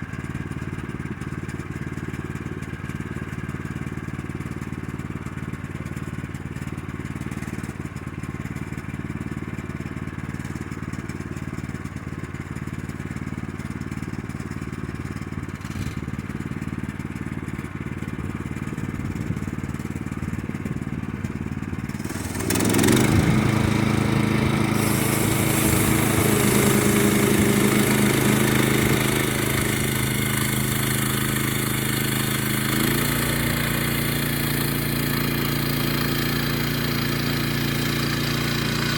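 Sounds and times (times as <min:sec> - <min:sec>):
gas engine running: 0:00.0 - 0:38.9
band saw cutting log: 0:21.9 - 0:38.9.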